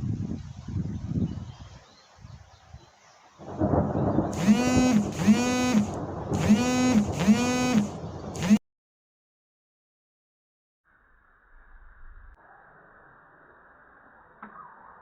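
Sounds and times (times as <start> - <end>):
thunder rumbling: 3.4 - 8.4.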